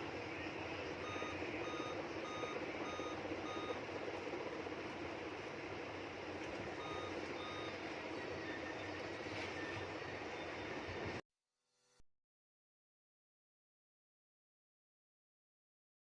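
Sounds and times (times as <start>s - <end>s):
short computer beeps: 1.0s - 3.8s, 6.8s - 10.6s.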